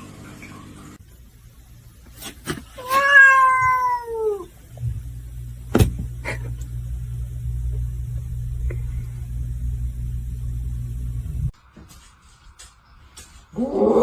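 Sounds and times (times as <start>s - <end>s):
cat meowing: 2.8s - 4.5s
low rumble: 4.7s - 11.5s.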